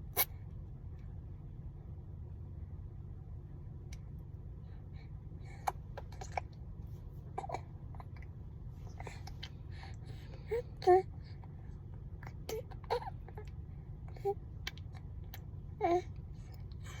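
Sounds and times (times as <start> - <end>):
low rumble inside car: 0.0 - 17.0
baby vocal sounds: 15.8 - 16.1.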